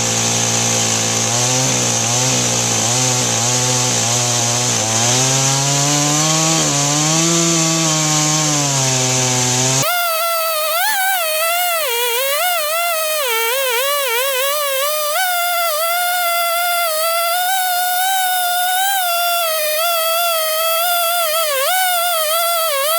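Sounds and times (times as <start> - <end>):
chainsaw cutting log: 0.0 - 22.9.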